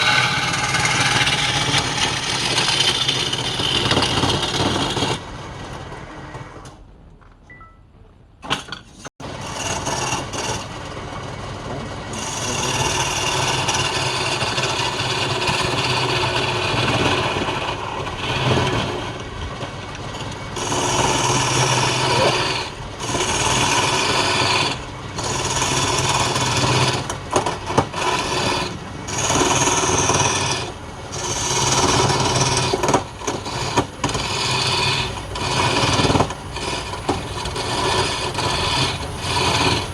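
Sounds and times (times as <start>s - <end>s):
lathe motor hum: 0.0s - 5.2s, 12.1s - 39.9s
tool scraping spinning wood: 0.0s - 5.3s, 9.0s - 11.0s, 12.0s - 39.9s.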